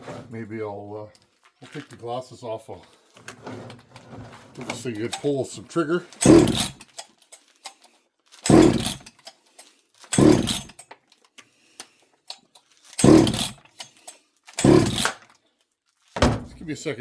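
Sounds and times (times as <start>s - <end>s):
recoil cord yanked: 5.0s - 5.4s, 6.1s - 11.3s, 12.3s - 15.3s
chainsaw engine turning over: 6.2s - 7.0s, 8.4s - 9.2s, 10.1s - 10.8s, 12.9s - 15.2s.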